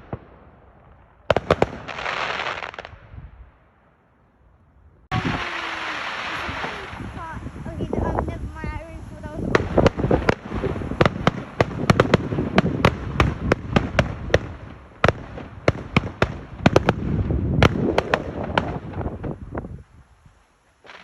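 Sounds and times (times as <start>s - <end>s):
fireworks cracks and bangs: 0.0s - 3.0s, 5.1s - 19.6s, 20.8s - 21.0s.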